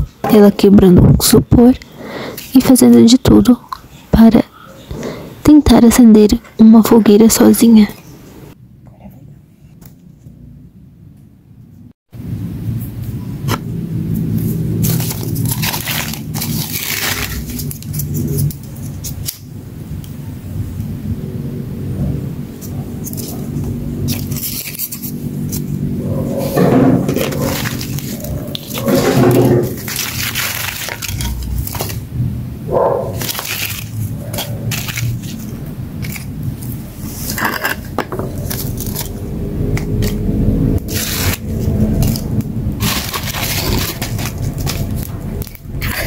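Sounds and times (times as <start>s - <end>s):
steady low rumble: 11.8s - 46.0s
styrofoam crunching and crackling: 14.8s - 19.4s, 27.1s - 32.1s, 33.1s - 39.1s, 40.8s - 46.0s.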